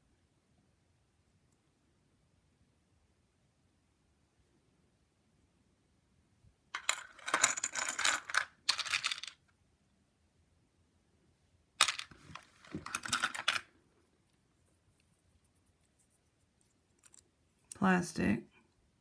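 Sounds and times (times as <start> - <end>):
jewelry clinking together: 6.8 - 9.4.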